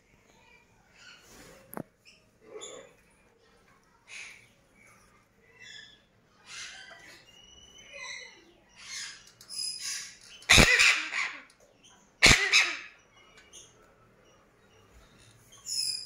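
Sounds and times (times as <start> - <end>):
parrot squeaky calls: 5.6 - 11.5, 12.2 - 13.0
parrot harsh squawks: 10.0 - 11.5, 12.2 - 13.0.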